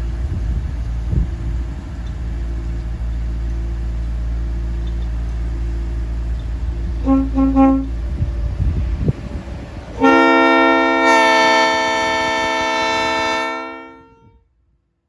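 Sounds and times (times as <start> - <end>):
engine idling: 0.0 - 11.0
train air horn toots: 7.0 - 8.0, 10.0 - 14.4.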